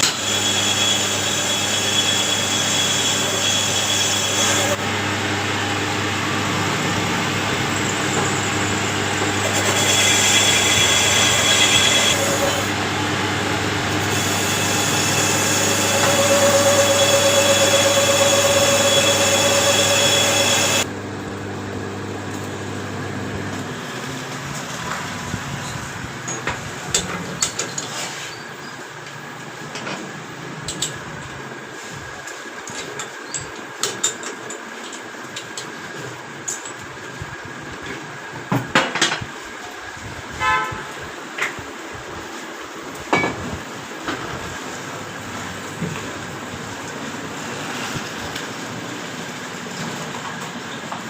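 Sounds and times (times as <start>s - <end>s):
machine hissing and whining: 0.0s - 20.9s.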